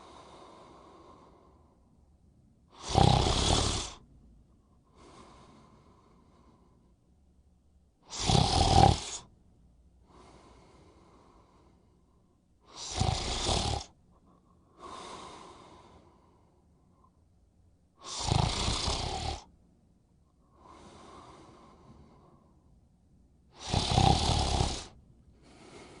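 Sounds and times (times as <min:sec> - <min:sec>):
person snoring: 0:02.8 - 0:04.0, 0:08.1 - 0:09.3, 0:12.7 - 0:14.0, 0:18.0 - 0:19.5, 0:23.6 - 0:26.0.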